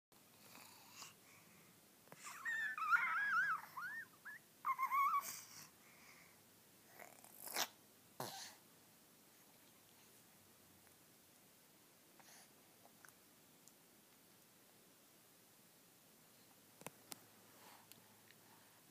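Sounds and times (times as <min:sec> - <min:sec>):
dog whining: 0:02.2 - 0:05.6.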